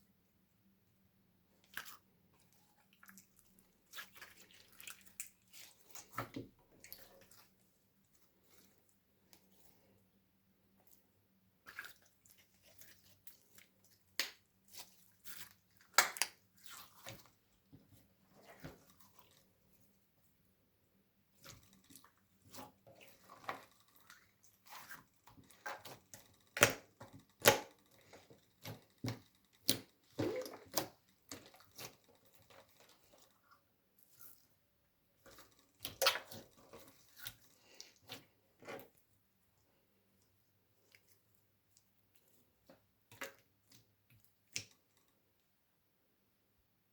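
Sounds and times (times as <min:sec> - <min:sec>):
slime squelching: 0:01.5 - 0:10.0, 0:10.7 - 0:20.1, 0:21.3 - 0:39.6.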